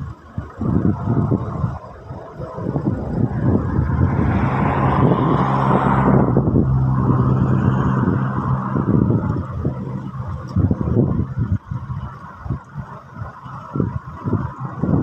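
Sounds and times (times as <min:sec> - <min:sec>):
engine humming: 0:00.0 - 0:15.0
vehicle rushing past: 0:00.7 - 0:12.0.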